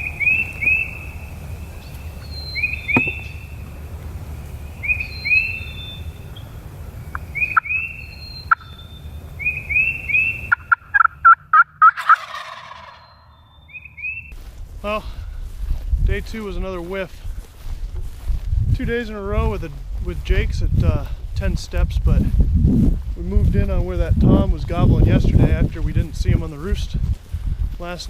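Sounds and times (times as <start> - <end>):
short high calls: 0.0 - 12.2
turkey gobbling: 0.0 - 14.2.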